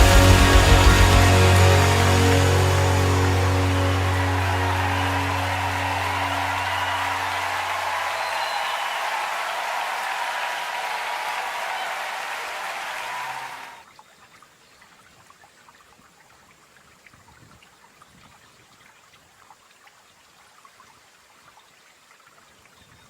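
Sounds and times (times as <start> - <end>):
audience applause: 0.0 - 13.8
stream trickling over rocks: 13.8 - 23.0.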